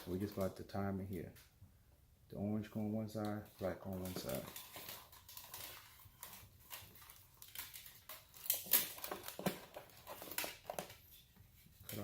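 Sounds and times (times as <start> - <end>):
light wires clicking and rustling: 3.2 - 12.0.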